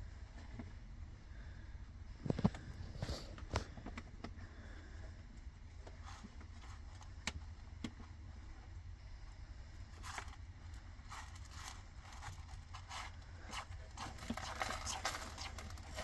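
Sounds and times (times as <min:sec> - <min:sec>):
kitten scratching in cat litter: 0:05.9 - 0:08.2, 0:09.9 - 0:16.0.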